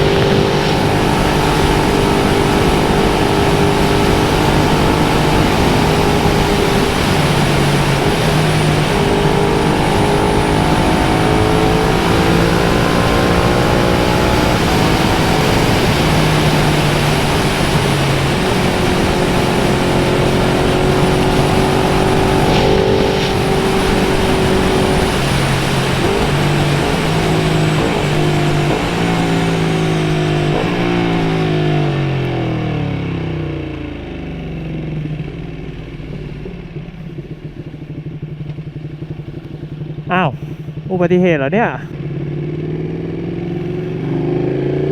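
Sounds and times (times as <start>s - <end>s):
wind rushing: 0.0s - 33.3s
motorcycle engine running: 0.0s - 44.9s.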